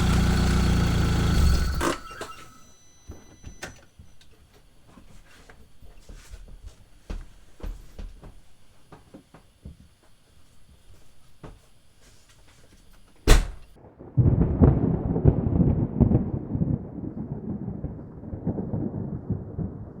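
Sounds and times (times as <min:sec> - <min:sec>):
car engine rumbling: 0:00.0 - 0:02.6.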